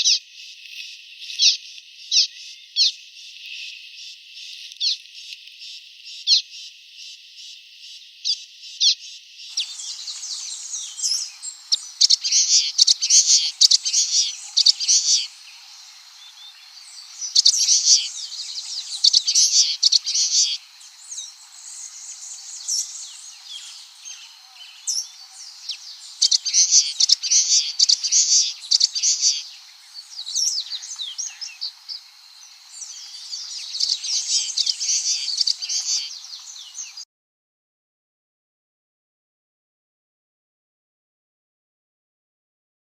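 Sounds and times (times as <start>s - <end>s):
bird twittering: 8.2s - 37.0s.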